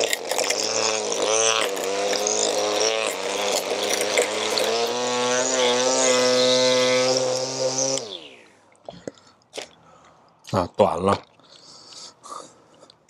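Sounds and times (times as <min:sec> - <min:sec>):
string trimmer cutting grass: 0:00.0 - 0:08.5.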